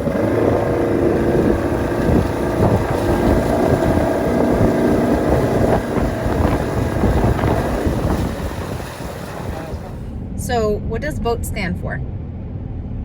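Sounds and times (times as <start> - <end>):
wind buffeting the microphone: 0.0 - 10.3
motorboat engine running: 0.0 - 11.7.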